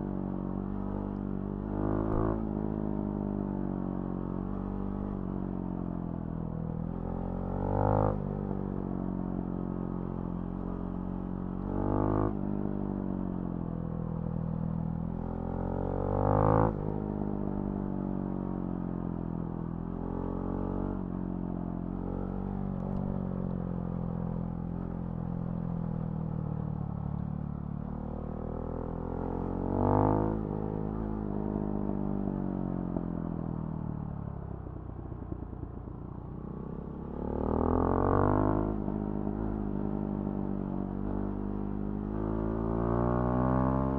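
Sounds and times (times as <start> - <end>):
motorcycle engine revving: 36.8 - 40.2.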